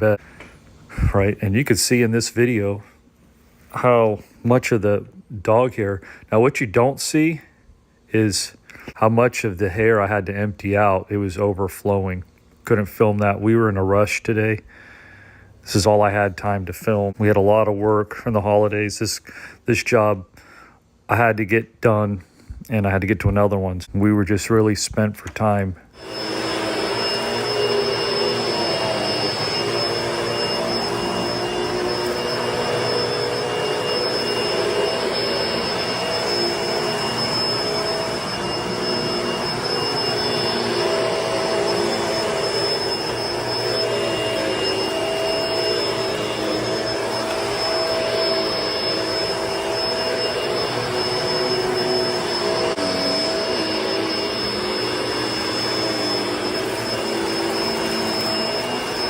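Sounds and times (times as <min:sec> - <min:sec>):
vacuum cleaner running over carpet: 0:26.0 - 0:59.0.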